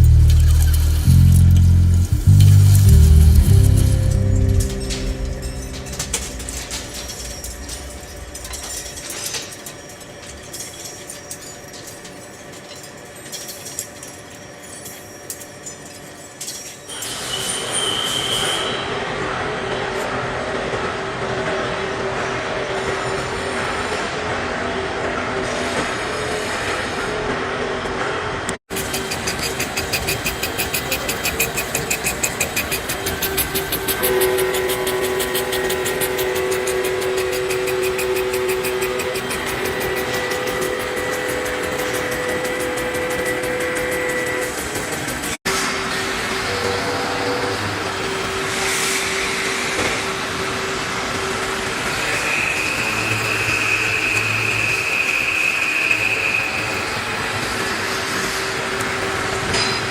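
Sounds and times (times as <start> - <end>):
background music: 0.0 - 7.9
steady tone: 0.0 - 9.2, 31.8 - 45.3
machine running steadily: 0.0 - 14.3, 28.7 - 46.6
sharp metallic clinks: 0.0 - 17.0
rapid rhythmic clatter: 28.7 - 45.4.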